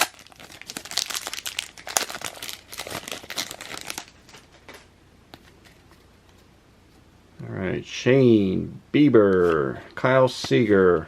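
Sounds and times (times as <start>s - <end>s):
foil wrapper crinkling: 0.0s - 4.9s.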